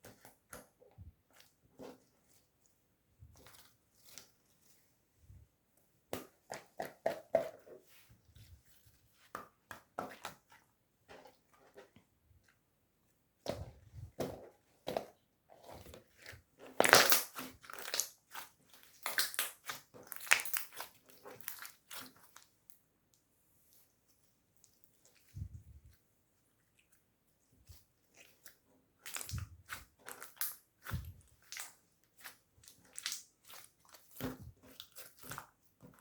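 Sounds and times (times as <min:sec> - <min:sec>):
slime squishing with sticky crackles: 0:00.0 - 0:04.9, 0:13.3 - 0:36.0.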